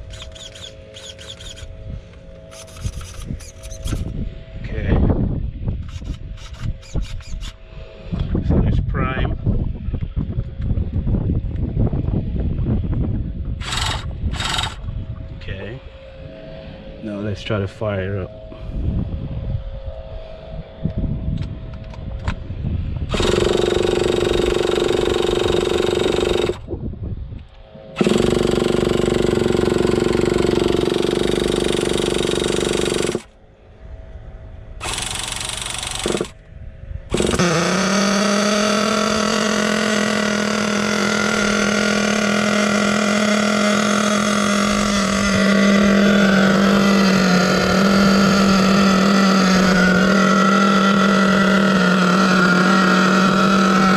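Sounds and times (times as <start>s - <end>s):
small engine being spun over: 0.0s - 1.7s, 2.4s - 4.2s, 5.8s - 7.6s, 13.6s - 14.8s, 23.1s - 26.7s, 27.9s - 33.3s, 34.8s - 36.4s, 37.1s - 53.9s
small engine idling: 0.0s - 1.8s, 23.1s - 26.7s, 27.8s - 33.4s, 34.8s - 36.4s, 37.1s - 53.9s.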